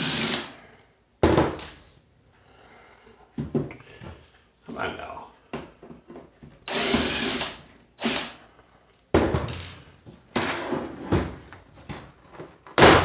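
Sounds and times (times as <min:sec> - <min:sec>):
screwdriver turning screw: 0:06.7 - 0:08.4.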